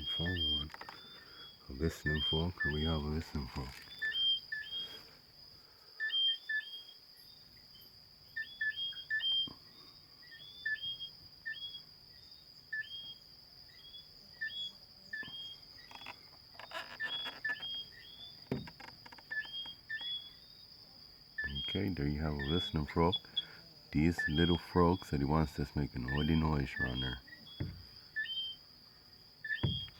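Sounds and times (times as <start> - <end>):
frogs whistling: 0.0 - 5.2, 6.0 - 20.7, 21.3 - 29.9
clicks and rustles: 0.6 - 1.0, 3.3 - 4.1.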